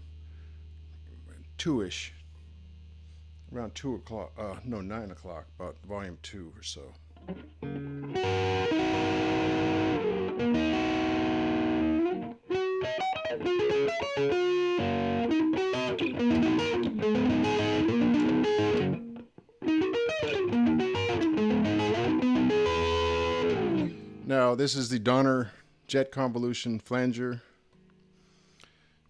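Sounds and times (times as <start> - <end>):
distorted electric guitar chords: 7.0 - 24.6.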